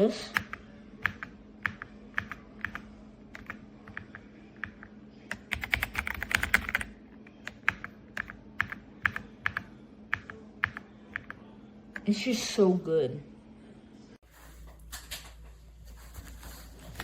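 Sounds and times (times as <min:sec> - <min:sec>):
mechanical keyboard keystrokes: 0:03.4 - 0:11.4.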